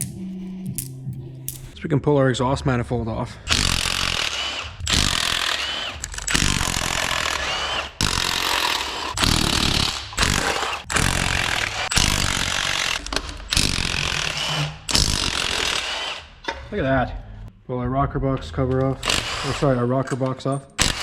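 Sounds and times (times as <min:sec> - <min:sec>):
impact wrench bursts: 0:03.5 - 0:16.3, 0:20.8 - 0:21.0.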